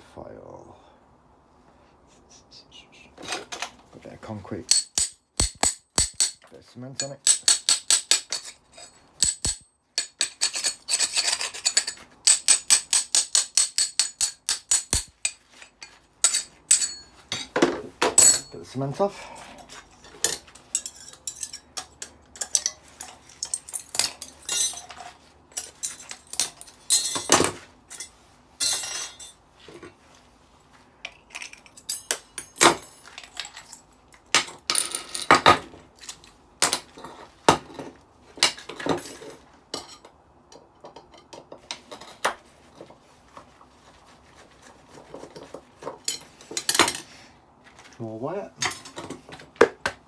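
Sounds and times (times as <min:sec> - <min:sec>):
metal parts clinking: 0:04.7 - 0:18.6, 0:20.0 - 0:29.4, 0:31.2 - 0:36.9.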